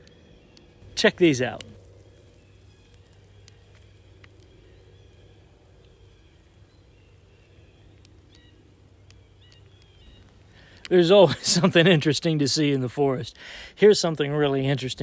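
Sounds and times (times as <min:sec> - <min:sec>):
faint high chirps: 0:00.0 - 0:11.0
low steady hum: 0:00.0 - 0:15.0
soft clicks: 0:02.9 - 0:05.1, 0:07.4 - 0:10.9.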